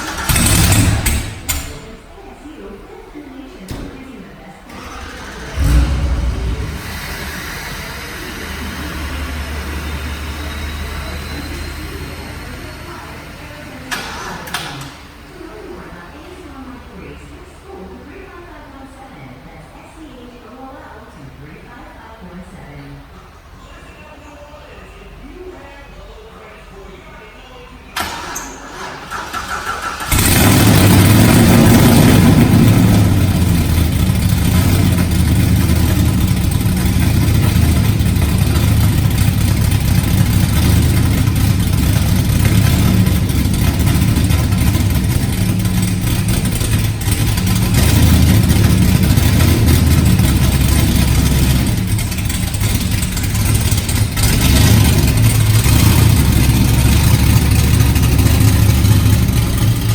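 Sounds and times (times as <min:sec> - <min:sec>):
car engine running and revving: 0:00.0 - 0:01.6, 0:04.8 - 0:14.3, 0:29.9 - 0:59.9.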